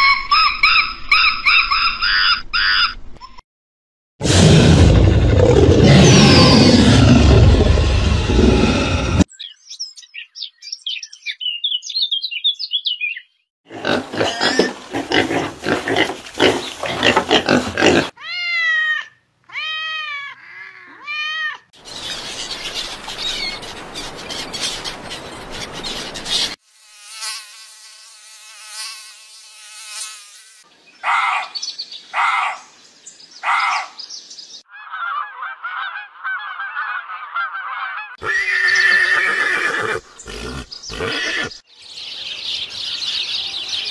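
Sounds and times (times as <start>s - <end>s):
loud harsh animal call: 4.2s - 9.3s, 34.7s - 41.6s.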